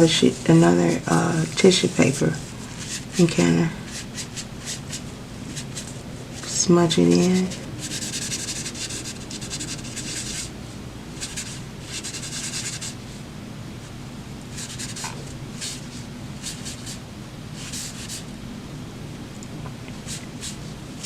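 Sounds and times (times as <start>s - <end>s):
graphite rubbing on paper: 0.0s - 10.6s, 11.2s - 13.0s, 14.5s - 17.0s, 17.6s - 18.3s, 20.0s - 21.0s.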